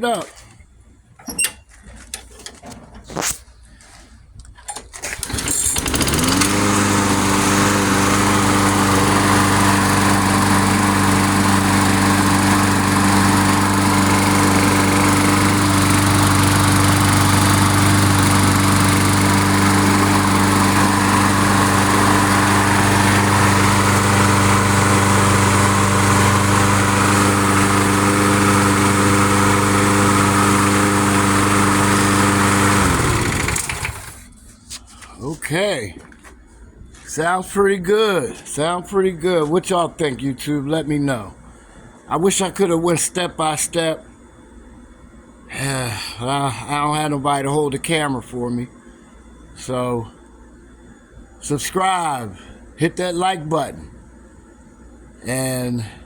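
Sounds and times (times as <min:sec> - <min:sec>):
lawn mower engine starting and running: 0:04.6 - 0:34.8.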